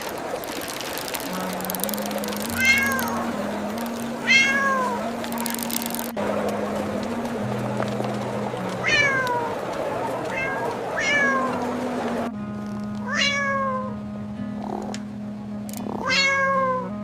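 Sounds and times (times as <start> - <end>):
low music drone: 0.0 - 17.0
cat meowing: 2.5 - 3.2, 4.2 - 5.1, 10.3 - 11.6, 13.1 - 13.9, 16.0 - 16.9.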